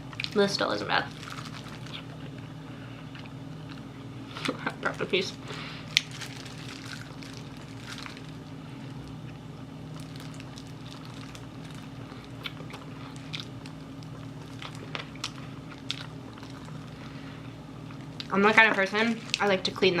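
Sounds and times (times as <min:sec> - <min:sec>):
steady low hum: 0:00.0 - 0:20.0
chewing crunchy fried chicken: 0:01.0 - 0:02.4, 0:05.4 - 0:18.3, 0:19.1 - 0:19.5.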